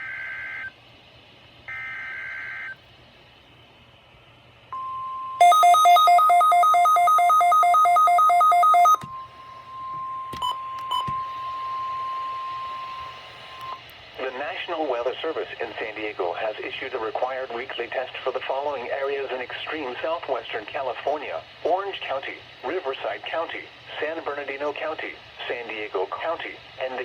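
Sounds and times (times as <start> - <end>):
steady warning tone: 4.8 - 13.8
two-pitch beeping alarm: 4.8 - 13.8.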